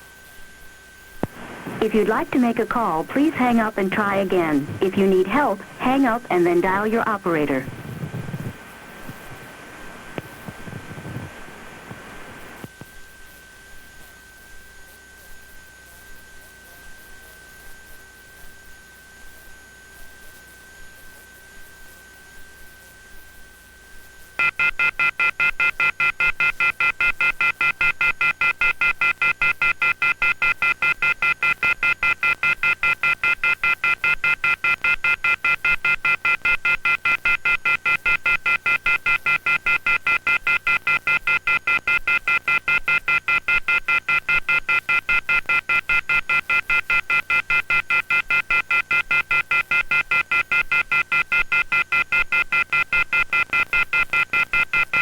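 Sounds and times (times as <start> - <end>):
pulsing high telephone tones: 1.8 - 8.5, 24.4 - 55.0.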